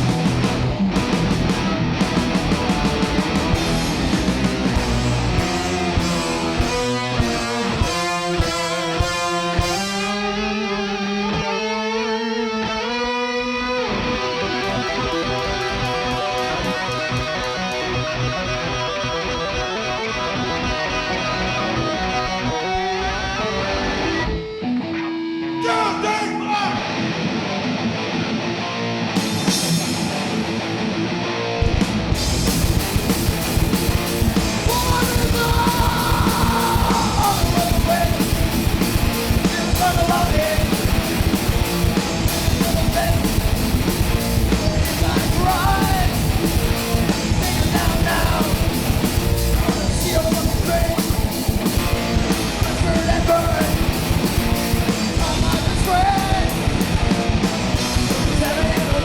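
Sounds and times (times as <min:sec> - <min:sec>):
electric guitar: 0:00.0 - 0:59.0
punk rock band playing: 0:00.0 - 0:59.0
person singing: 0:25.5 - 0:26.8, 0:34.6 - 0:38.4, 0:39.4 - 0:41.0, 0:42.4 - 0:43.4, 0:44.6 - 0:46.3, 0:47.3 - 0:48.7, 0:49.6 - 0:51.3, 0:52.6 - 0:53.9, 0:55.0 - 0:56.8, 0:58.1 - 0:59.0.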